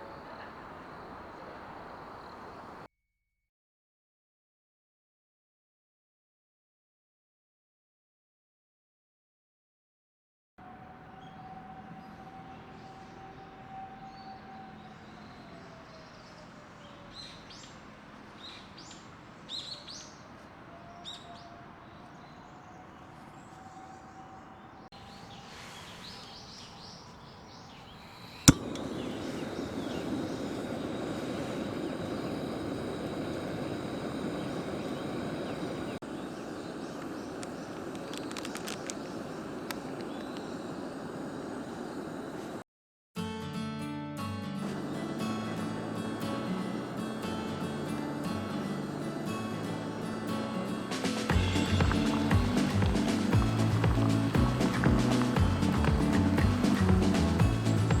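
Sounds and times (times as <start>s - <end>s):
bird chirps: 0.0s - 2.9s, 11.0s - 42.6s, 44.8s - 58.0s
distant sliding tone: 23.4s - 42.5s
steady rushing noise: 28.4s - 42.6s, 44.7s - 58.0s.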